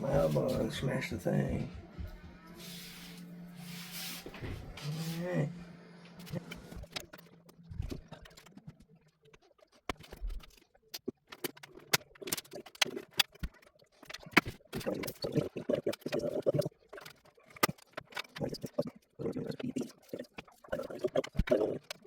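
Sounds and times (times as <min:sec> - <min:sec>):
faint low hum: 0:00.0 - 0:08.7
computer parts clicking and knocking: 0:09.7 - 0:18.7.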